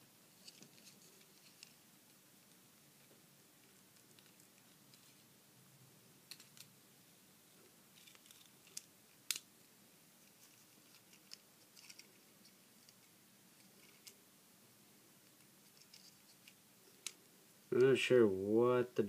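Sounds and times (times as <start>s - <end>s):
plastic toy parts clicking: 6.3s - 6.7s.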